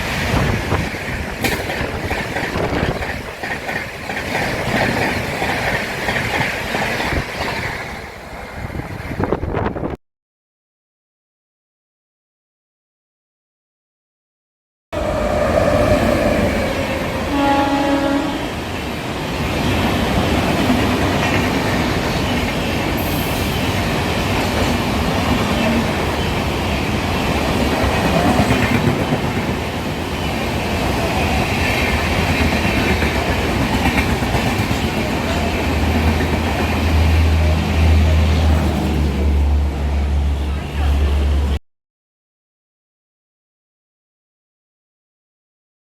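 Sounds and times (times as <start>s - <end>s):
train wheel clatter: 0.0s - 8.0s, 27.0s - 38.9s
train horn: 15.0s - 18.6s.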